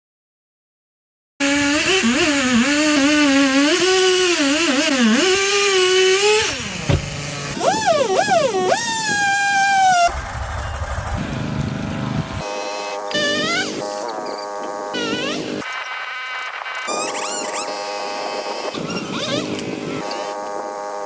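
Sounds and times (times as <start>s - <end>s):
small engine revving: 1.4s - 15.7s.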